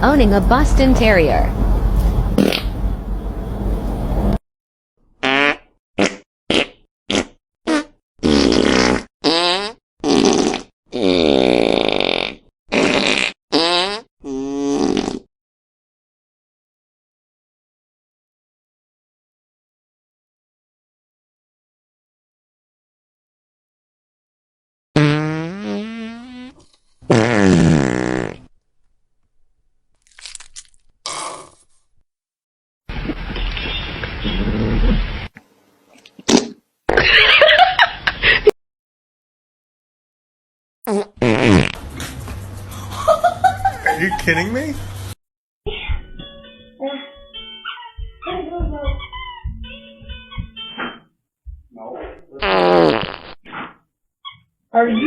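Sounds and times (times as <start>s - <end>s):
fart sounds: 2.4s - 2.8s, 5.2s - 15.3s, 25.0s - 28.5s, 31.0s - 31.7s, 34.2s - 35.4s, 36.1s - 37.1s, 40.9s - 42.1s, 52.4s - 53.8s.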